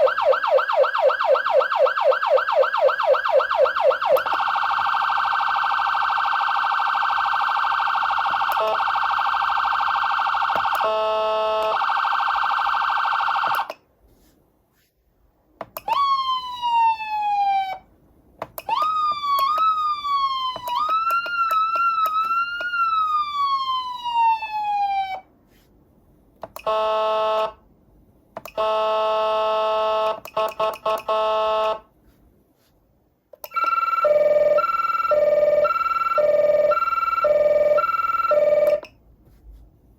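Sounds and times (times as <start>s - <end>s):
electronic siren tones: 0.0s - 13.7s, 33.4s - 38.9s.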